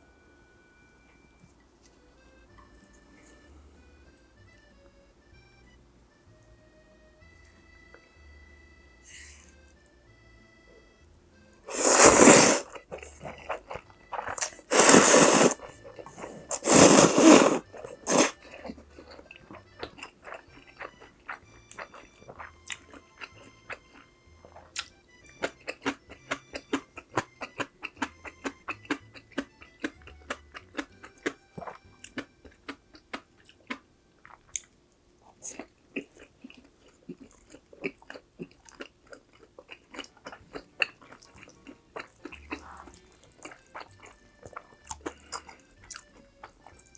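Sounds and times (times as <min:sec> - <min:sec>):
chewing with wet clicks: 0:11.7 - 0:46.9.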